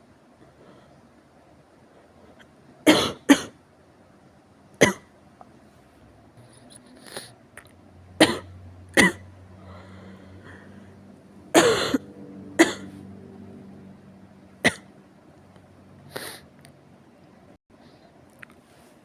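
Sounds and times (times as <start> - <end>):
person coughing: 2.9 - 3.5, 8.2 - 9.2, 11.5 - 12.9, 14.7 - 14.9.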